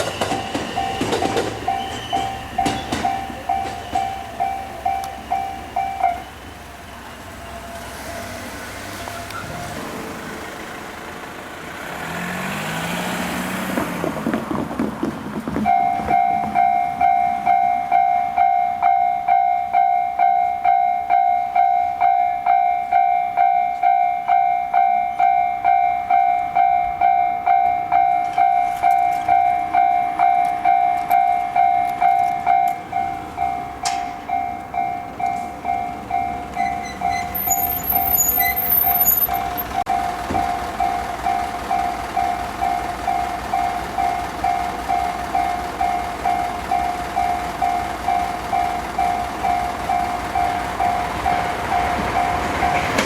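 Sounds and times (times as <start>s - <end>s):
train passing: 0.0s - 53.0s
level crossing electronic bell: 34.3s - 40.2s.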